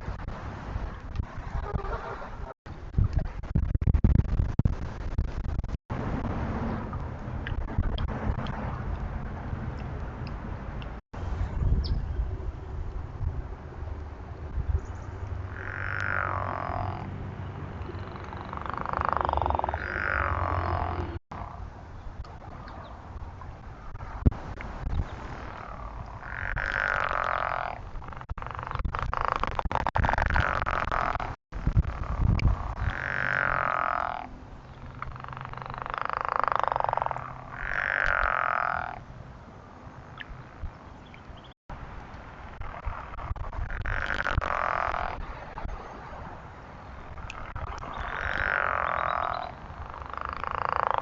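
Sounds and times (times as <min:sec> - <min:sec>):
steady low rumble: 0:02.7 - 0:15.9
frogs calling: 0:15.4 - 0:17.1, 0:17.7 - 0:21.6, 0:25.3 - 0:39.1, 0:42.6 - 0:45.2, 0:47.1 - 0:51.0.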